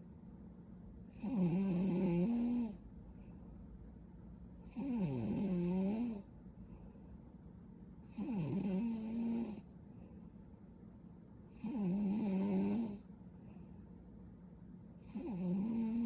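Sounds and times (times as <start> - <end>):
woman snoring: 1.2 - 2.8, 4.7 - 6.3, 8.1 - 9.6, 11.6 - 13.0, 15.1 - 16.0.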